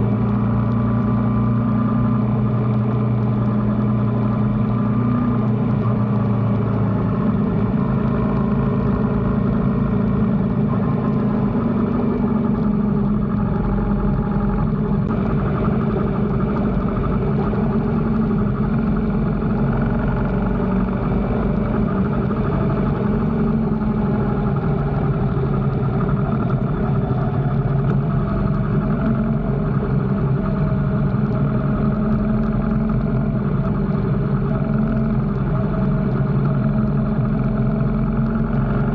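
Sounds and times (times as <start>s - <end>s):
motorcycle engine running: 0.0s - 38.9s
steady rushing noise: 9.0s - 37.3s.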